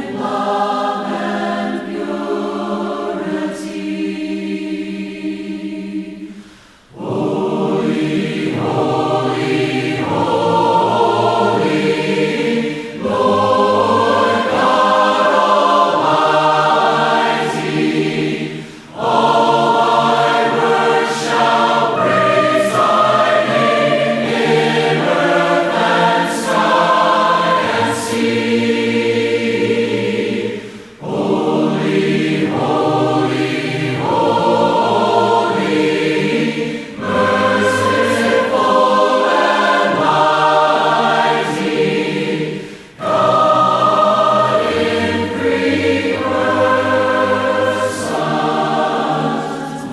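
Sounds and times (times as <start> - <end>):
choir singing a hymn: 0.0 - 49.9
singers breathing: 6.2 - 7.0, 18.4 - 19.0, 30.5 - 31.0, 36.6 - 37.0, 42.5 - 43.0.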